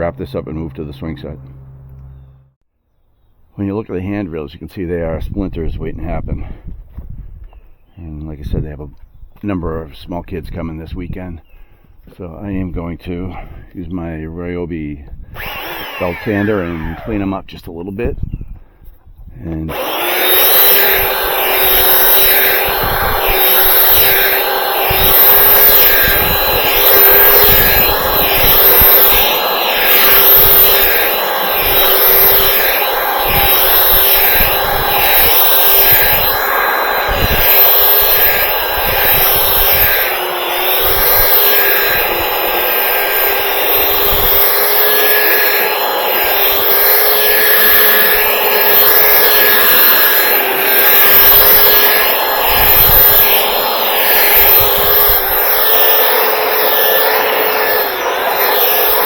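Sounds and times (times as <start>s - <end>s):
belt sander sanding wood: 15.4s - 17.3s, 19.6s - 59.0s.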